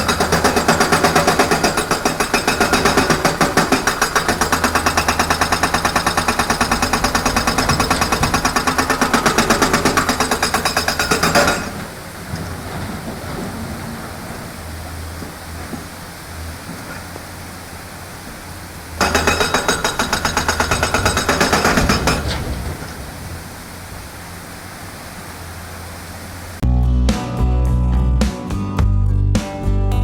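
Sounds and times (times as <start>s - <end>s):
hydraulic breaker hammering: 0.0s - 14.6s, 18.9s - 23.4s
excavator engine: 0.0s - 26.7s.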